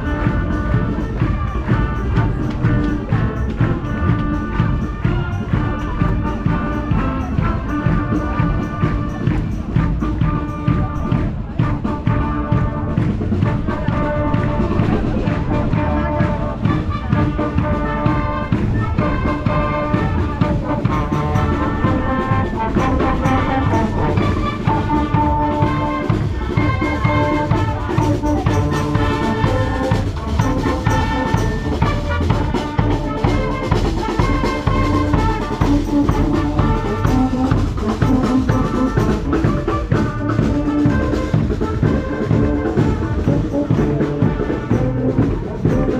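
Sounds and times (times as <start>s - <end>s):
brass band playing: 0.0s - 45.9s.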